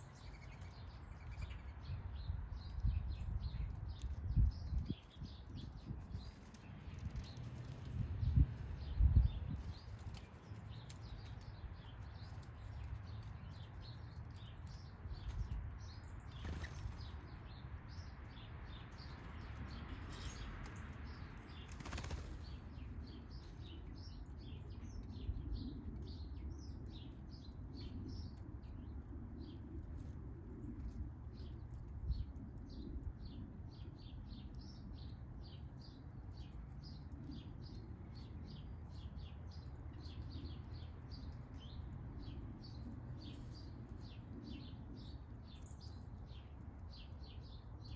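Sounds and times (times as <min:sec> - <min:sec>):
wing flutters: 0:21.5 - 0:22.9.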